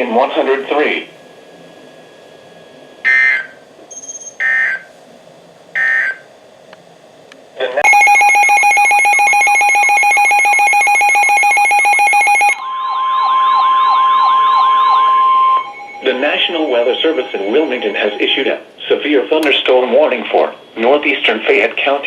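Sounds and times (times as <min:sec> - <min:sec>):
data tone bursts: 0:07.8 - 0:18.4
steady alert tone: 0:07.8 - 0:18.6
siren-like sweep: 0:07.9 - 0:18.6.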